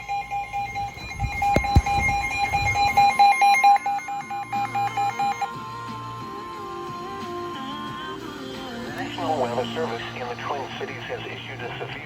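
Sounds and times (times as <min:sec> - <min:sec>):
fast alarm beeping: 0:00.0 - 0:05.5.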